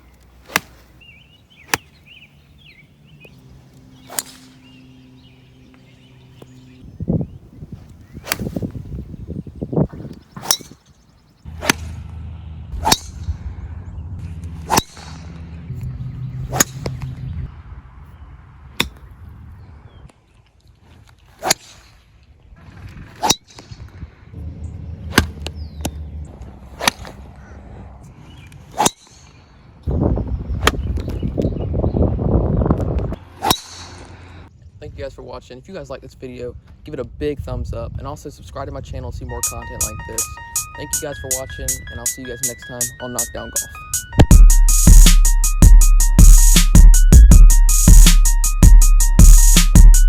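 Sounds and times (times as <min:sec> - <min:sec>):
golf ball strikes: 0:00.4 - 0:02.1, 0:04.0 - 0:04.8, 0:08.2 - 0:08.7, 0:11.5 - 0:13.4, 0:16.4 - 0:17.1
low rumble: 0:11.5 - 0:19.9, 0:23.7 - 0:28.1.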